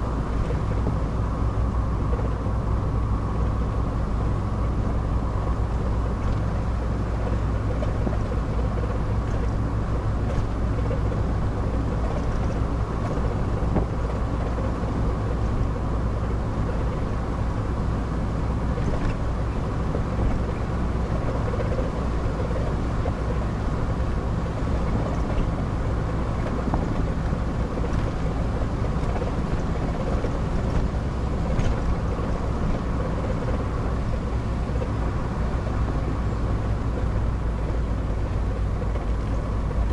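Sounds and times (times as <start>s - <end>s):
car engine and road noise: 0.0s - 39.9s.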